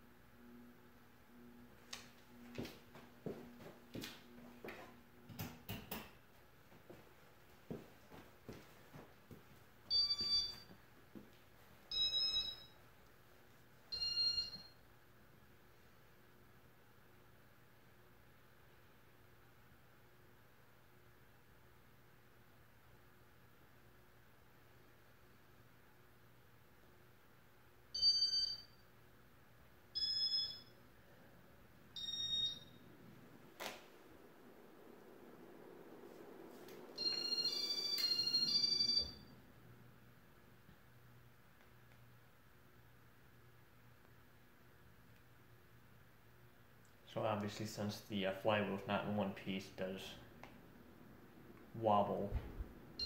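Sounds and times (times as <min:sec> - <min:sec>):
faint steady hum: 0:00.0 - 0:53.0
fan control beeping: 0:09.9 - 0:10.7, 0:11.9 - 0:12.7, 0:30.0 - 0:30.8, 0:31.9 - 0:39.2
electronic beeps: 0:32.0 - 0:32.8, 0:36.9 - 0:39.3.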